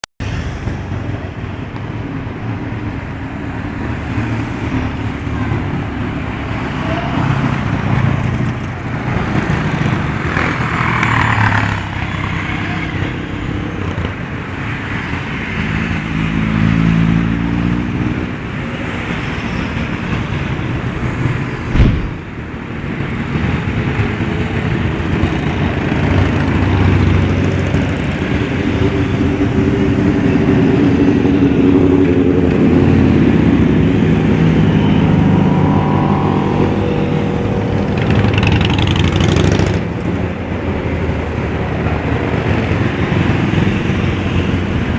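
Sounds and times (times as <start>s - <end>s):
motorcycle engines revving: 2.6s - 44.9s
sharp thump: 21.6s - 22.4s.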